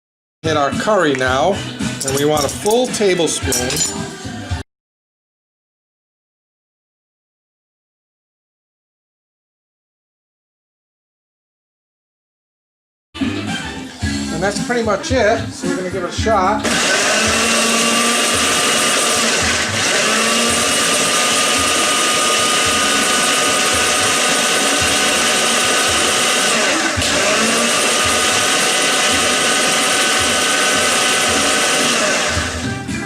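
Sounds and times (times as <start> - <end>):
electric blender whining: 16.6 - 33.0.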